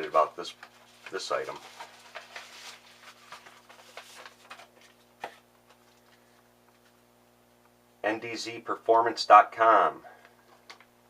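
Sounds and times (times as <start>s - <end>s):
plastic bag rustling and crinkling: 0.0s - 5.1s.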